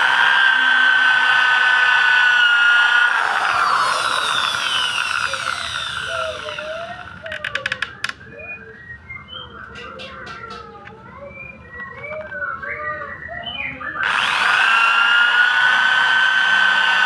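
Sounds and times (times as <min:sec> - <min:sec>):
electric drill whining: 0:00.0 - 0:08.0, 0:14.0 - 0:17.0
birds calling faintly: 0:03.0 - 0:14.1.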